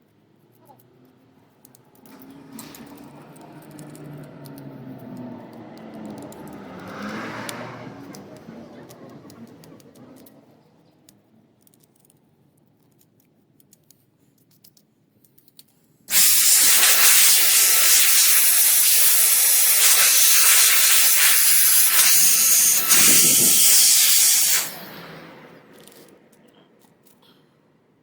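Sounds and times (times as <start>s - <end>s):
air blower hissing: 16.1s - 25.2s.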